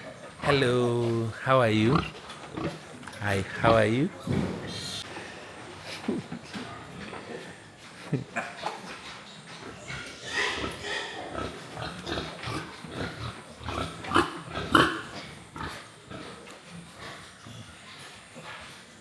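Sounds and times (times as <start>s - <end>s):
pigs grunting: 0.0s - 5.0s, 9.6s - 19.0s.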